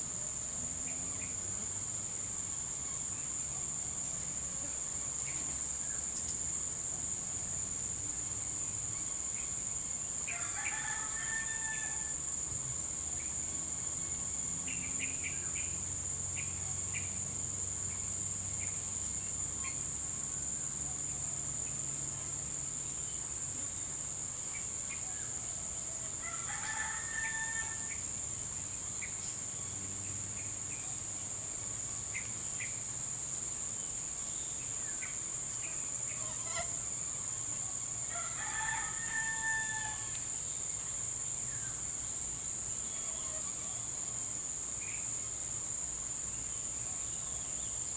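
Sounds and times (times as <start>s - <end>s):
insects buzzing: 0.0s - 47.9s
rooster crowing: 10.3s - 12.2s, 25.9s - 28.0s, 38.1s - 40.2s.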